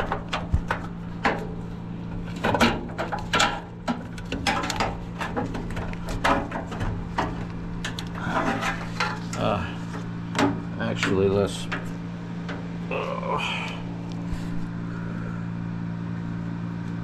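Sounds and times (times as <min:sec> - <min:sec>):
clicks and knocks of handling parts: 0:00.0 - 0:12.8
steady low hum: 0:00.0 - 0:17.0.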